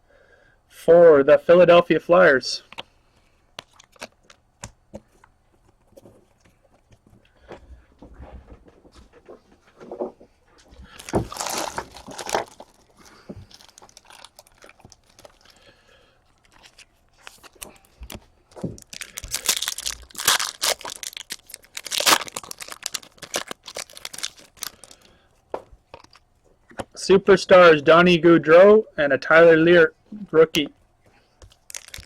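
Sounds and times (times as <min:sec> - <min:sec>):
quiet handling of wrapper: 0:02.6 - 0:07.5, 0:09.8 - 0:26.7, 0:30.8 - 0:32.0
card pack wrapper crinkling and tearing: 0:03.6 - 0:04.4, 0:10.9 - 0:15.7, 0:16.3 - 0:25.2, 0:25.9 - 0:26.2, 0:31.4 - 0:32.0.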